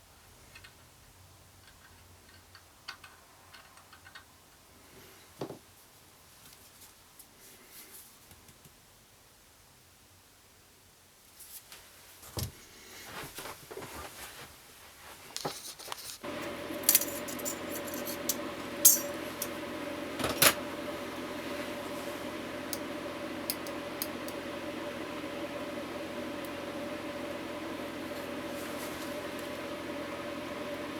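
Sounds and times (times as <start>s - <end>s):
machine humming: 16.2s - 30.9s
metal parts clinking: 16.8s - 19.2s.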